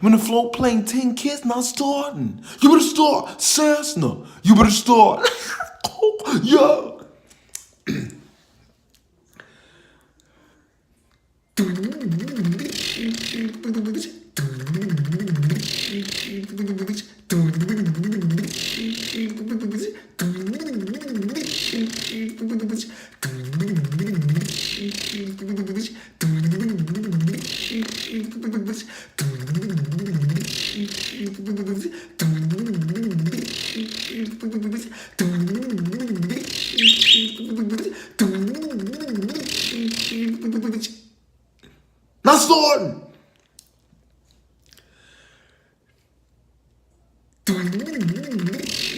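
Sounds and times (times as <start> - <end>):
person imitating engine cranking: 11.6 - 16.4, 47.5 - 48.9
bird chirp: 36.7 - 37.6.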